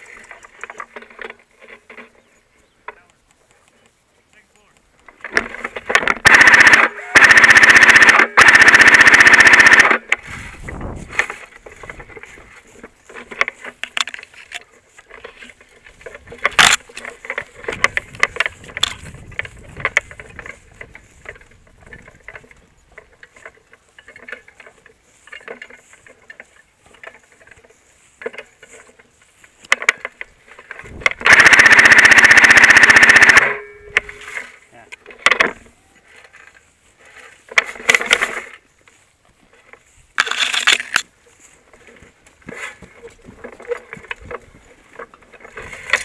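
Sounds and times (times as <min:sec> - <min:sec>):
handling clicks and rustles: 0:00.0 - 0:46.0
airsoft gun firing burst: 0:06.1 - 0:10.1, 0:31.1 - 0:34.2.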